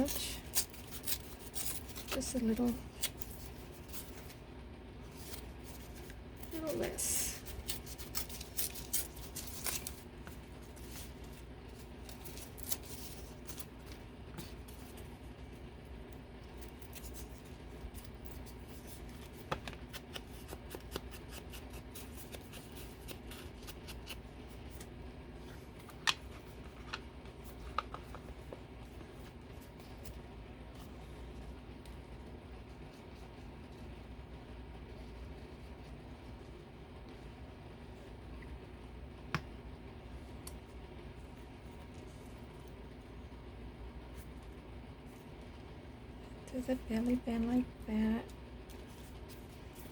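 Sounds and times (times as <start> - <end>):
scissors snipping paper: 0.0 - 4.3, 6.0 - 10.0, 16.6 - 24.9
paper crinkling: 0.0 - 33.9
steady low hum: 0.0 - 49.9.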